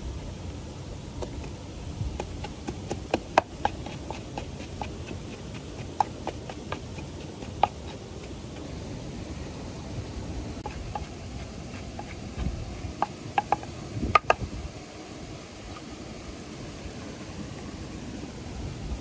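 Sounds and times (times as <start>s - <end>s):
steady low rumble: 0.0s - 15.4s
clicks and taps of eating: 2.2s - 8.6s, 10.6s - 14.4s.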